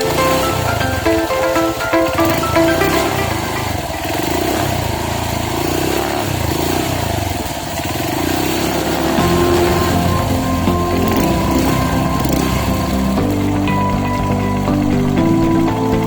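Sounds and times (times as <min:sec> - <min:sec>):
background music: 0:00.0 - 0:04.4, 0:08.9 - 0:16.0
motorcycle engine revving: 0:03.8 - 0:14.9.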